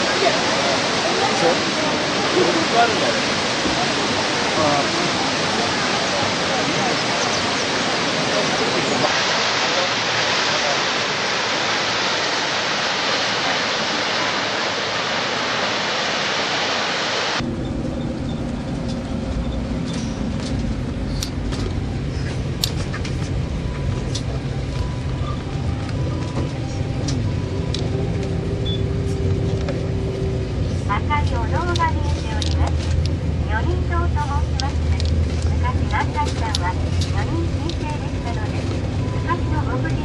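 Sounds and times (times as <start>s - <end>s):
waterfall rushing: 0.0s - 17.4s
low vehicle rumble: 17.4s - 40.0s.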